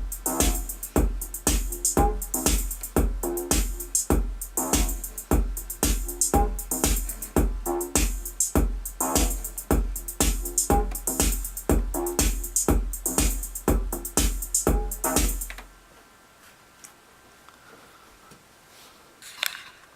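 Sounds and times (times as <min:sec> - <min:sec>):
synthesizer pattern: 0:00.0 - 0:15.5
drum machine beat: 0:00.0 - 0:15.6
faint hiss: 0:00.0 - 0:19.2.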